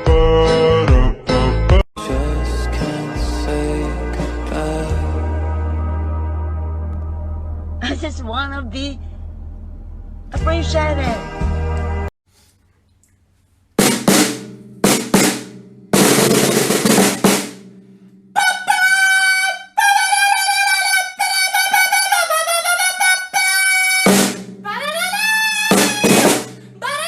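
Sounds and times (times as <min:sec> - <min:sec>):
snare drum roll: 0:13.8 - 0:17.8, 0:24.1 - 0:24.7, 0:25.6 - 0:26.7
sharp drum hits: 0:13.8 - 0:18.3, 0:24.1 - 0:26.8.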